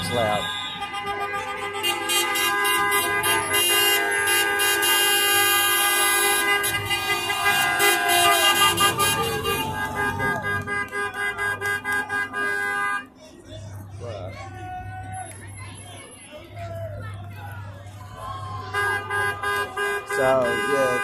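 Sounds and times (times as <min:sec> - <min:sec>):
people shouting: 0:00.0 - 0:12.7, 0:14.3 - 0:21.0
many car horns honking: 0:00.0 - 0:13.2, 0:18.2 - 0:21.0.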